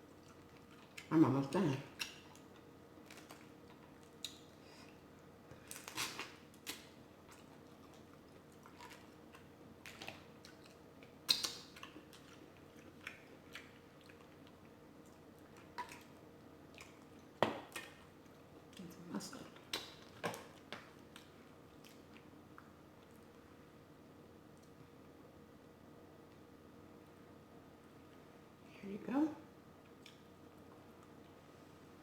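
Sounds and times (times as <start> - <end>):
chewing smacks and crackles: 0.0 - 1.1, 1.9 - 23.5, 29.8 - 31.4.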